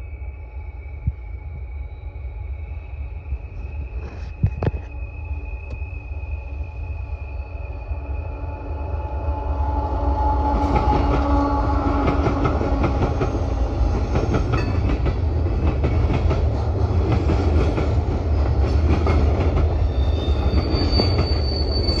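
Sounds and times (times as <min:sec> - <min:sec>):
freight train rumble: 0:00.0 - 0:22.0
thin high squeal: 0:19.8 - 0:22.0.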